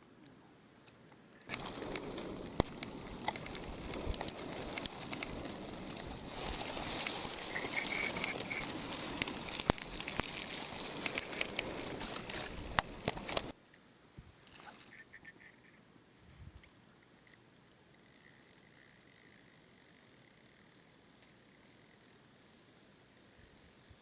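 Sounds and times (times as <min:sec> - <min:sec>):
stream water running: 0:01.5 - 0:13.6.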